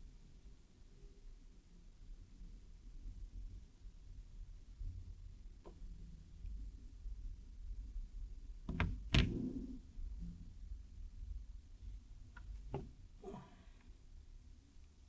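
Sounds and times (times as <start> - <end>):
knocks and thuds of handling: 12.4 - 13.0.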